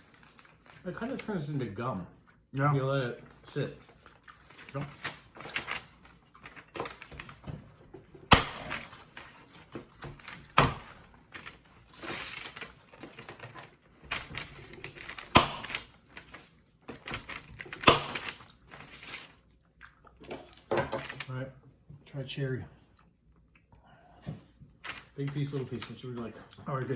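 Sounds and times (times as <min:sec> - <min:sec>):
hard candy cracking: 0:02.3 - 0:21.3.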